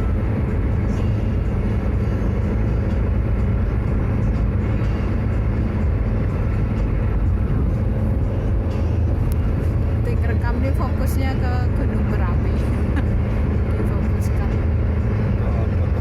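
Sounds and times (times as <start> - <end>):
car road and engine rumble: 0.0 - 16.0.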